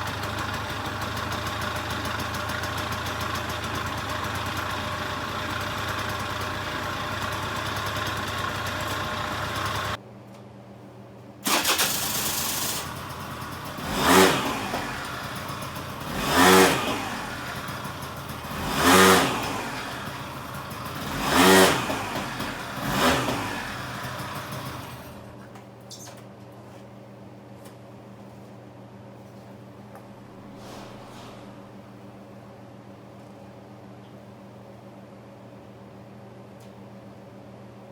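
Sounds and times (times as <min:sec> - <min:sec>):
scooter engine revving: 0:00.0 - 0:10.0, 0:11.5 - 0:25.2.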